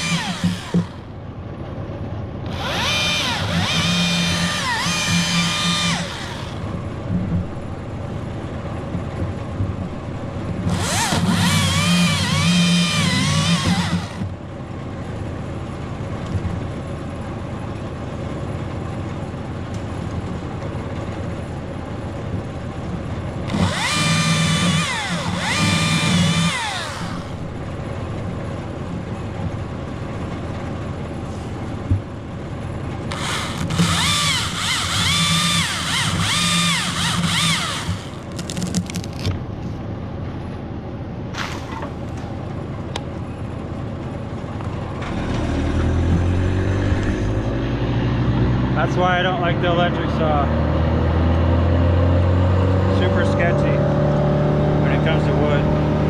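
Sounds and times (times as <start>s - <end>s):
electric chainsaw cutting wood: 0.0s - 1.1s, 2.5s - 6.8s, 10.7s - 14.3s, 23.5s - 27.5s, 33.1s - 39.3s.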